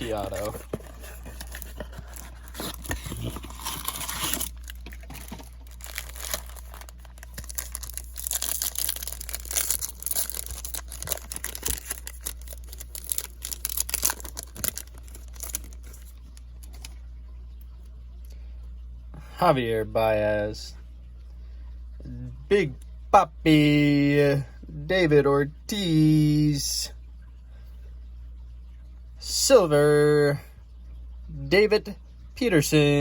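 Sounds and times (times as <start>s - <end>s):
plastic wrapping tearing and crinkling: 0.0s - 16.9s.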